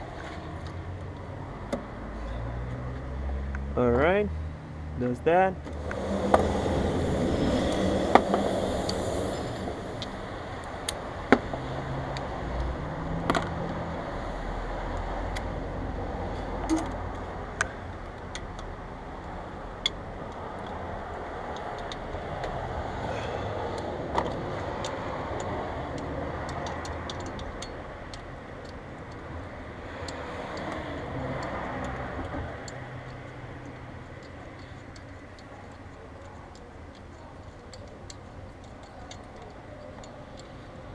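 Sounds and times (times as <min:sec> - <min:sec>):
metallic clicks of hand tools: 0:21.5 - 0:22.6, 0:23.7 - 0:40.9.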